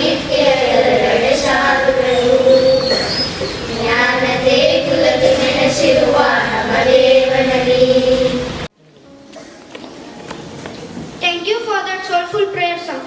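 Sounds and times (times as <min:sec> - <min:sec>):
children singing: 0:00.0 - 0:08.7.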